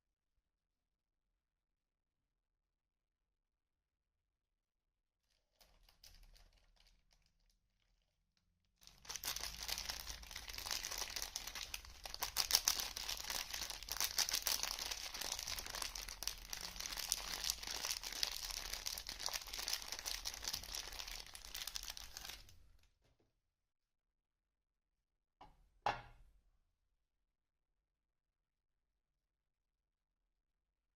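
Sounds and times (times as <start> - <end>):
wrapper crinkling and tearing: 5.5 - 7.9, 8.8 - 22.5.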